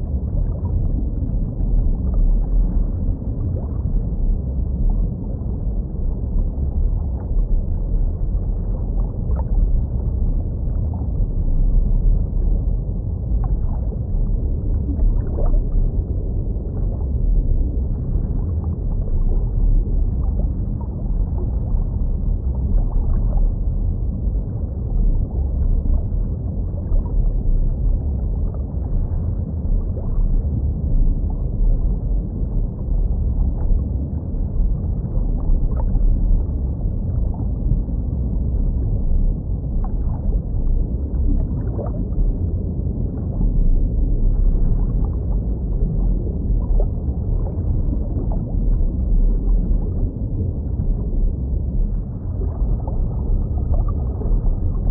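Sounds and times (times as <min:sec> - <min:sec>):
underwater rumble: 0:00.0 - 0:54.9.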